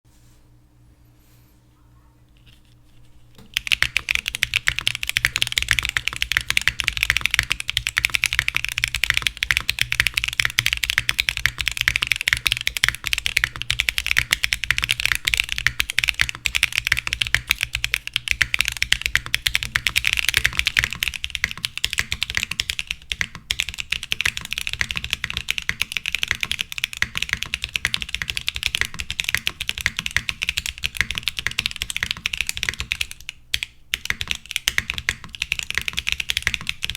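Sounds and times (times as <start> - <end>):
rapid mechanical keyboard typing: 3.4 - 36.9.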